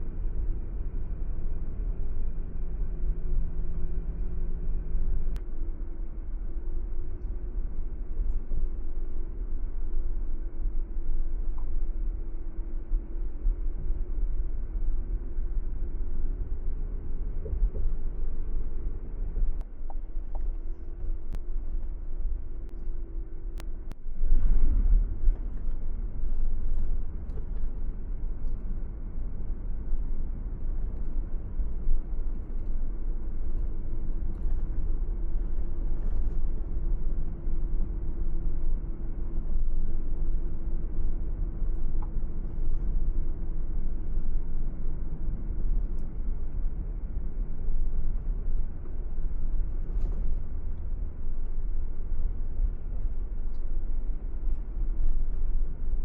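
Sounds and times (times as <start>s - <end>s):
faint steady hum: 0.0s - 56.0s
road and engine rumble: 13.4s - 56.0s.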